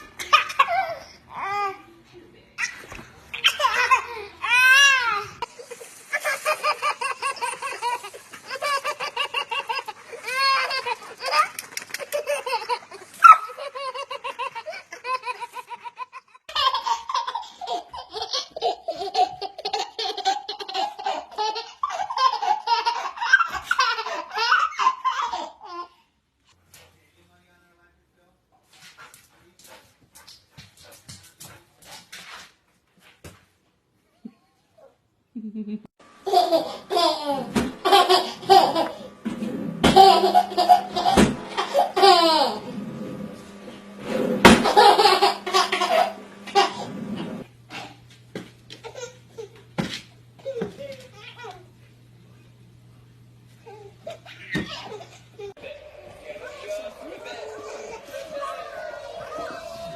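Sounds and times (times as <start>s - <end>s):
young child laughing: 2.6s - 25.9s, 53.6s - 59.9s.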